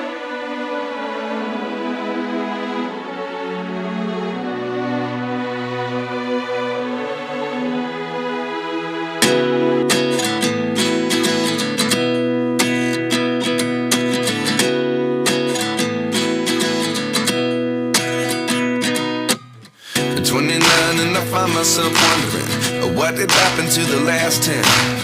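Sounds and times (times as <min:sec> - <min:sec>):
acoustic guitar strumming: 0:09.2 - 0:25.0.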